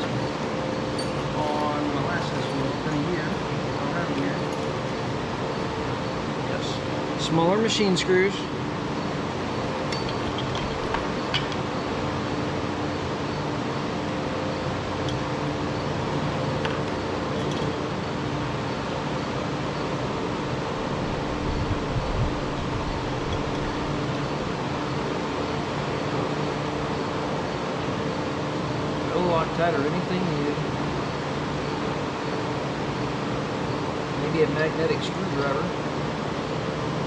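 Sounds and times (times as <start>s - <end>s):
steady mechanical hum: 0.0s - 37.0s.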